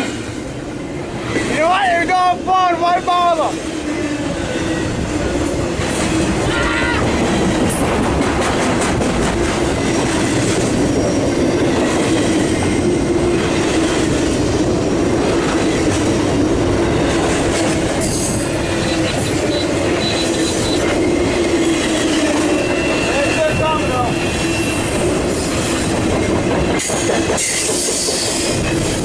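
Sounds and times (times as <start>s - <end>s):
train wheels rumbling on rail: 0.0s - 29.0s
faint wheel squeal: 24.1s - 25.5s.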